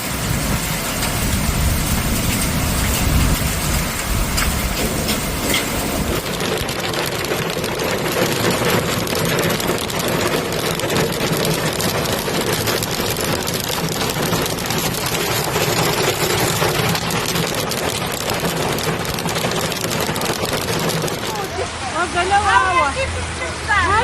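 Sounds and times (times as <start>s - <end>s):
hail and rain pelting hard surfaces: 0.0s - 23.4s.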